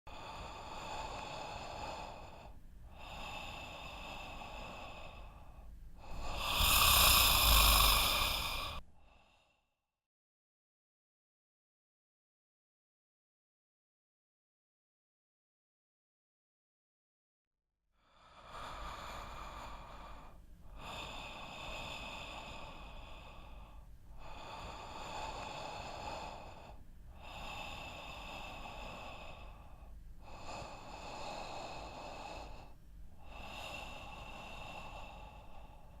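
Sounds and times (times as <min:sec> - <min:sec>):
person breathing heavily: 0:00.1 - 0:09.5, 0:18.1 - 0:36.0.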